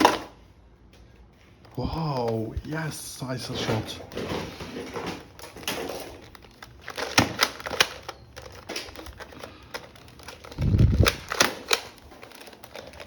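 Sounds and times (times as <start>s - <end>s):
toy guns clicking: 5.6s - 13.0s.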